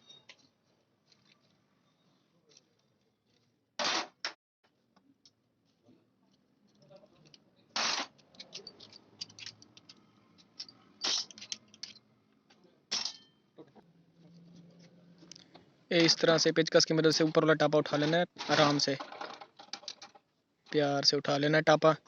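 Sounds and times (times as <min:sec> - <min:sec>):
metal tools clinking: 0:08.1 - 0:12.1, 0:12.9 - 0:13.4.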